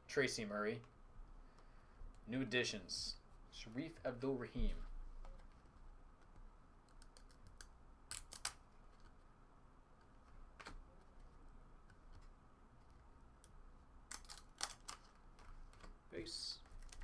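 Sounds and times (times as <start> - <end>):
trading cards flipped: 6.3 - 9.2, 14.1 - 16.0.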